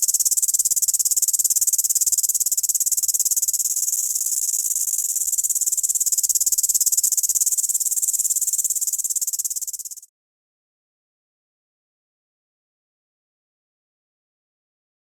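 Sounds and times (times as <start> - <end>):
grasshopper stridulating: 0.0 - 10.1.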